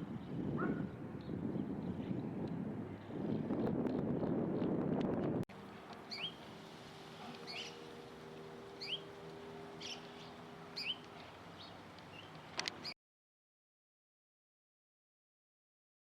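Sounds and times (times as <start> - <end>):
bird chirping: 6.0 - 6.5, 7.2 - 7.9, 8.8 - 13.0.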